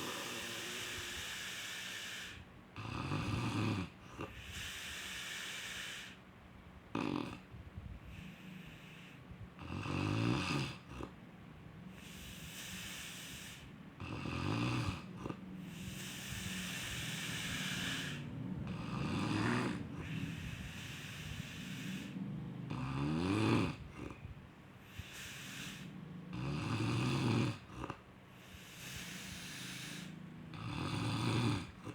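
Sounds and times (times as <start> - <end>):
person snoring: 0.0 - 6.2, 12.0 - 24.2, 24.8 - 31.9.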